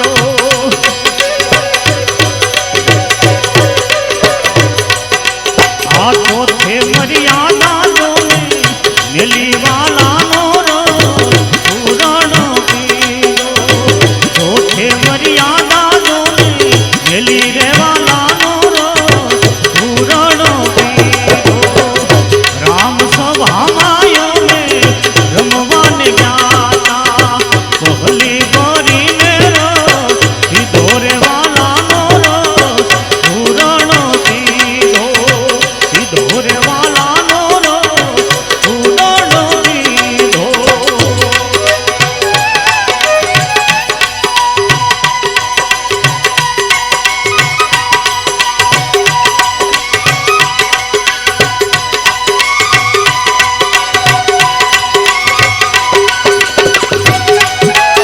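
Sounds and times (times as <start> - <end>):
hand drum beat: 0.0 - 58.0
devotional folk song: 5.5 - 44.7.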